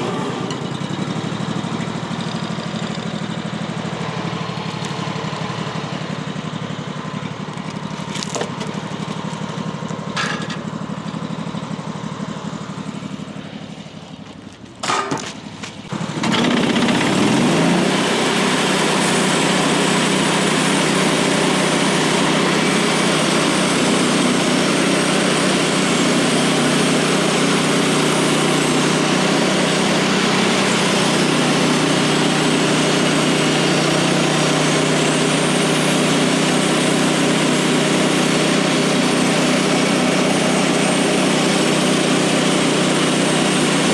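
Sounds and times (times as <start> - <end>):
engine running at high speed: 0.0 - 43.9
gas engine idling: 0.0 - 43.9.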